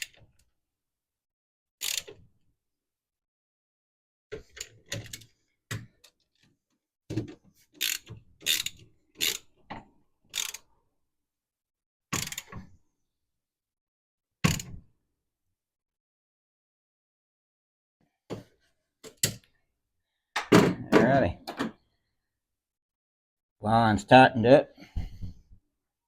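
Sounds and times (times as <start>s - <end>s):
wrench clicking and ratcheting: 1.8s - 2.1s, 7.8s - 9.5s, 10.3s - 10.6s, 12.2s - 12.5s.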